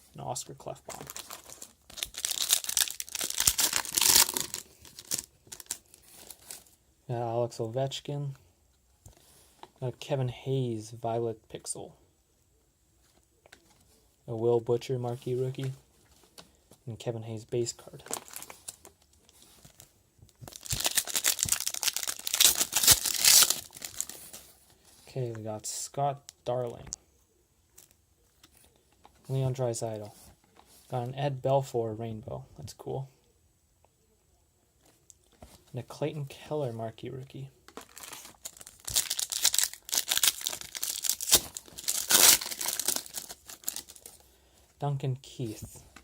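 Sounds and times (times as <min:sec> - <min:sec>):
foil wrapper tearing and crinkling: 0:01.0 - 0:06.6, 0:20.5 - 0:24.4, 0:37.8 - 0:44.2.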